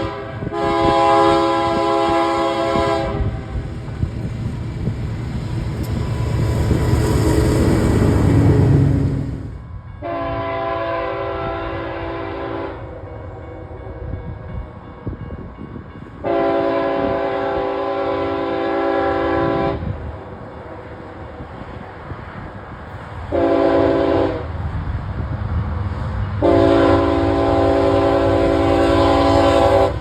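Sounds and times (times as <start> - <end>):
locomotive air horn blasts: 0.0 - 3.7, 10.0 - 13.1, 16.2 - 20.0, 23.3 - 24.6, 26.4 - 30.0
low rumble of train: 0.0 - 30.0.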